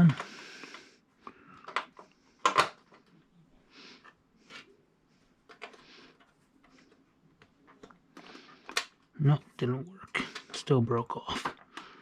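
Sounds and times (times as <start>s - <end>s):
plastic and metal clicks and scrapes: 0.0s - 3.2s, 5.4s - 9.1s, 10.1s - 12.0s.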